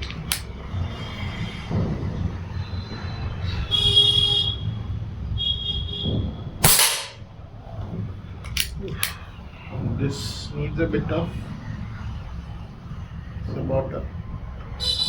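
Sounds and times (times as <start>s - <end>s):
air rifle shot crack: 6.6s - 7.3s.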